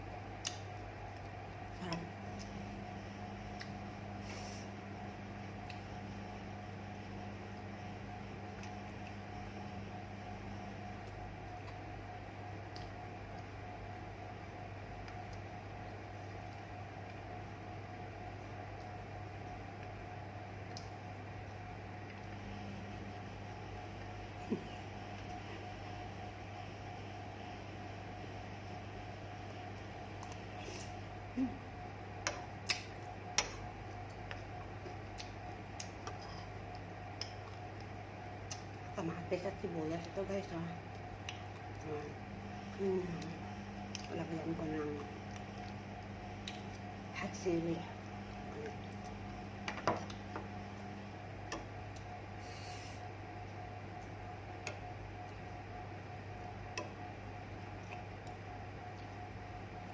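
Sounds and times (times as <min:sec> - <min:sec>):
steady low hum: 0:00.0 - 0:59.9
eating clicks and smacks: 0:00.4 - 0:02.5, 0:12.6 - 0:13.5, 0:20.6 - 0:21.0, 0:32.2 - 0:38.9, 0:40.8 - 0:41.8, 0:46.4 - 0:46.9.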